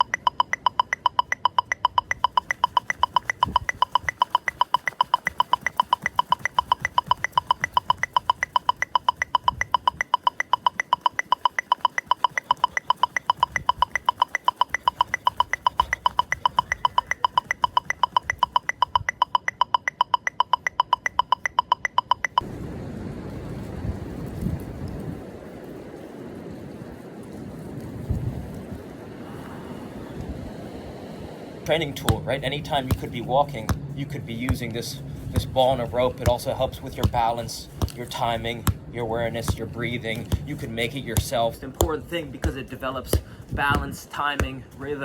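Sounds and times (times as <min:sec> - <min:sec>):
metronome click track: 0:00.0 - 0:22.5.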